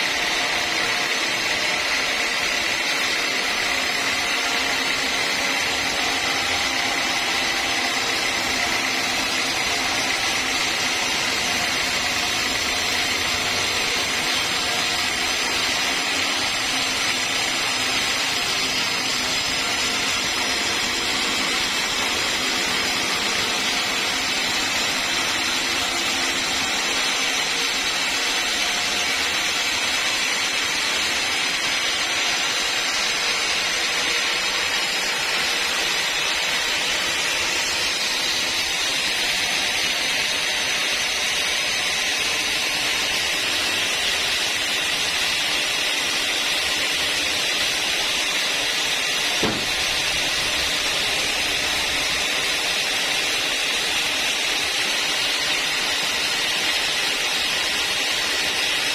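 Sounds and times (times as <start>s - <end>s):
sawmill saw cutting log: 0.0s - 58.9s.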